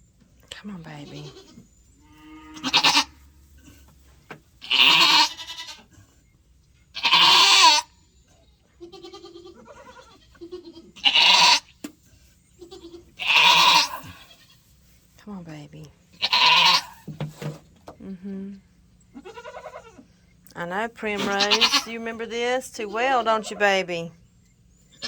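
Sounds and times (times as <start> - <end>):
goat bleating loudly: 1.0 - 1.6, 2.3 - 3.3, 4.6 - 5.9, 7.0 - 7.9, 8.8 - 11.8, 12.6 - 14.6, 16.2 - 17.0, 19.2 - 20.0, 21.1 - 22.1
goat grunting: 2.4 - 4.0, 4.6 - 6.2, 7.0 - 7.9, 8.9 - 11.8, 12.6 - 14.6, 16.2 - 17.1, 21.1 - 22.0.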